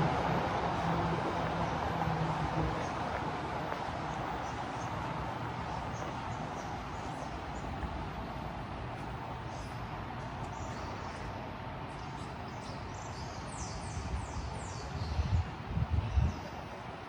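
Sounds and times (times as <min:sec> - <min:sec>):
city street hum: 0:00.0 - 0:17.0
small birds chirping: 0:09.0 - 0:16.7.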